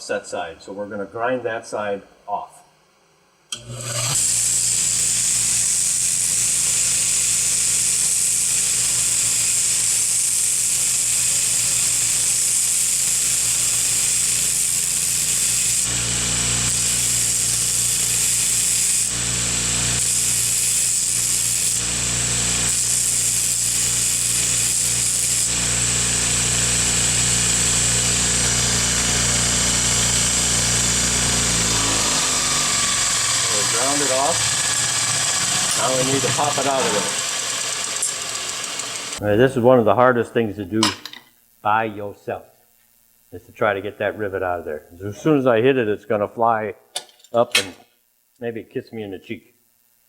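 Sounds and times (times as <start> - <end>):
electric grinder grinding metal: 3.5 - 39.3.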